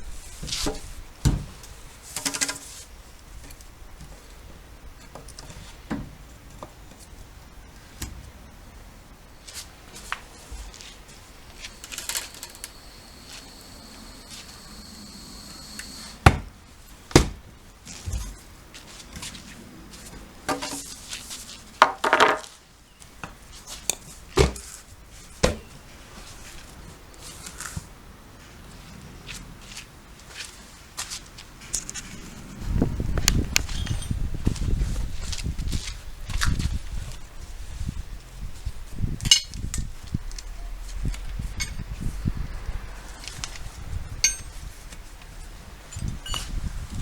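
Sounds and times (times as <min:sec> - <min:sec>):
faint high steady whistle: 0:11.7 - 0:16.2
hand tools clanking on car wheel: 0:39.3 - 0:39.6, 0:44.2 - 0:44.7.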